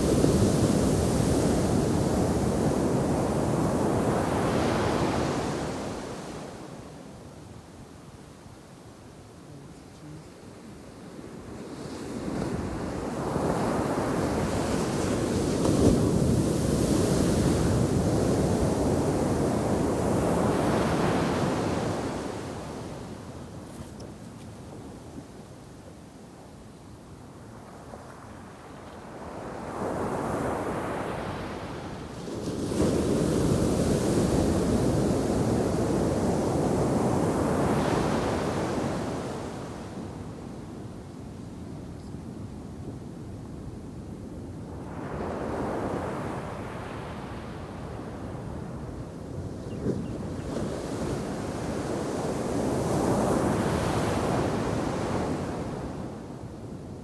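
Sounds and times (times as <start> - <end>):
waves crashing on beach: 0.0 - 7.2, 9.2 - 23.8, 29.0 - 40.6, 50.1 - 56.5.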